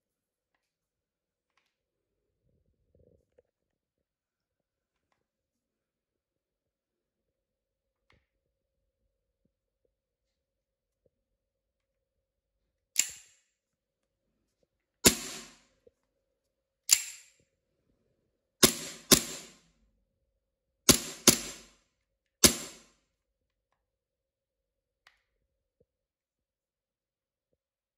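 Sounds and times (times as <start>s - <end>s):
airsoft pistol shots: 15.0s - 15.6s, 18.6s - 19.6s, 20.9s - 21.8s, 22.4s - 22.9s.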